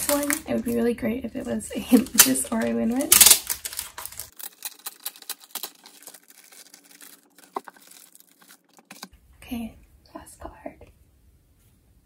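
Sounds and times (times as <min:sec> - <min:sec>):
paper and plastic rustling: 0:00.0 - 0:09.1.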